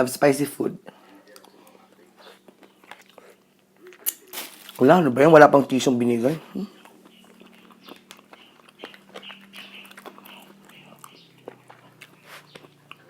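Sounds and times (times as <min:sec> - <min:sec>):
faint steady hum: 0:00.0 - 0:13.0
person chewing: 0:01.1 - 0:04.8, 0:06.5 - 0:13.0.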